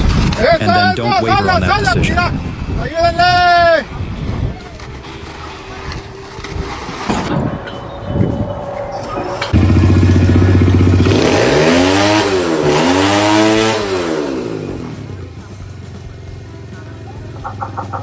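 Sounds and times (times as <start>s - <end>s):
engine running and revving: 4.4s - 18.0s.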